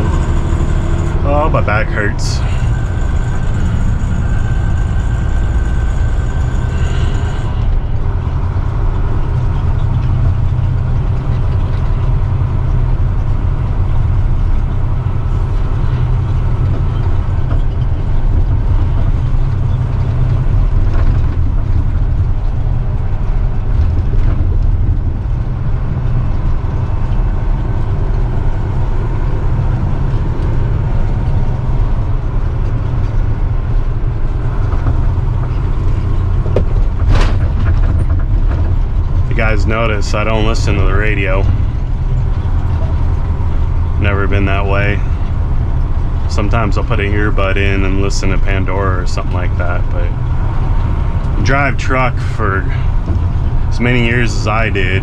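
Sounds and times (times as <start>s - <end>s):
thin high whine: 0.0s - 10.0s
truck engine and road drone: 0.0s - 55.0s.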